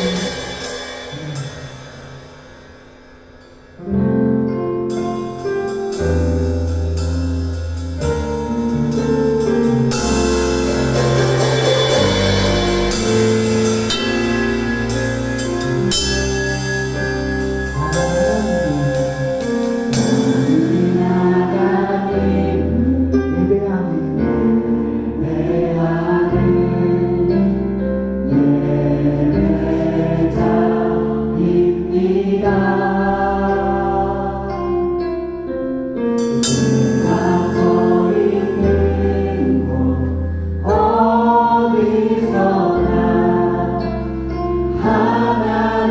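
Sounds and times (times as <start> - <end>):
worship song with sung vocals: 0.0 - 1.8, 20.1 - 34.9, 36.6 - 45.9
drum kit and cymbals: 0.0 - 22.3, 36.0 - 43.2.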